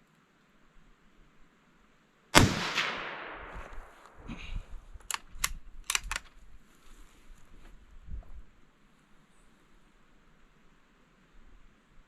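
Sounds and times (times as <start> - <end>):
rifle shot: 2.4 - 4.2.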